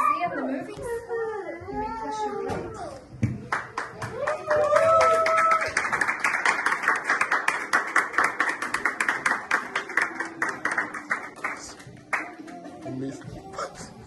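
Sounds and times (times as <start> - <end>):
crowd applauding: 3.5 - 13.1.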